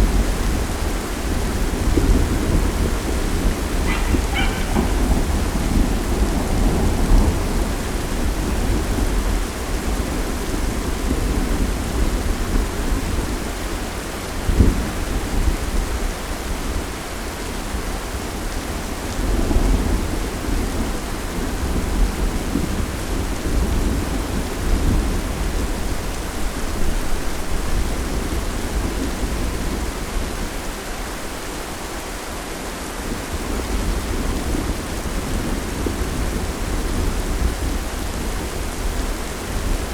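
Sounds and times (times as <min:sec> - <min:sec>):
thunder rumbling: 0:00.0 - 0:13.6
steady rain: 0:00.0 - 0:39.9.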